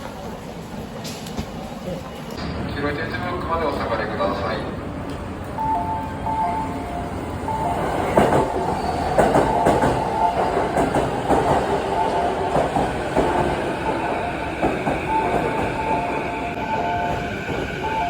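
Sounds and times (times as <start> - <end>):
train rumble: 0.0 - 18.0
train wheels clicking over rails: 7.8 - 16.0.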